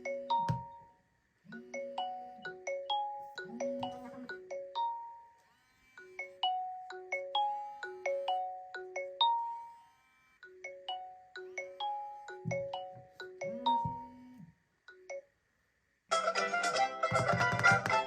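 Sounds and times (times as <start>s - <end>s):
marimba ringtone melody: 0.0s - 5.4s, 6.0s - 9.8s, 10.4s - 15.2s
low phone buzz: 3.3s - 4.4s, 5.4s - 10.4s, 11.4s - 14.6s.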